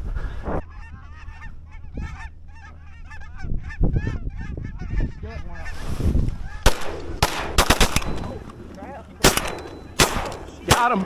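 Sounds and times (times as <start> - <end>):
geese honking: 0.6 - 11.0
shotgun shot: 6.6 - 8.4, 9.2 - 11.0.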